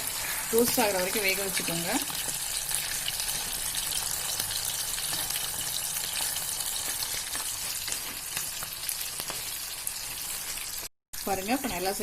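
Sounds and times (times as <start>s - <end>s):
chicken deep-frying in oil: 0.0s - 12.0s.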